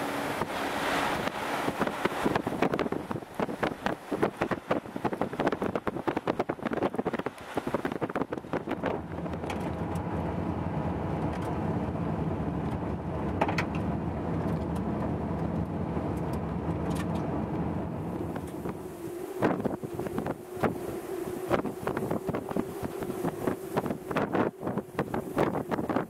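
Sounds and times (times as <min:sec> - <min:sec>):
low engine rumble: 0:00.0 - 0:26.0
wind buffeting microphone: 0:00.0 - 0:26.0
faint hum: 0:17.4 - 0:26.0.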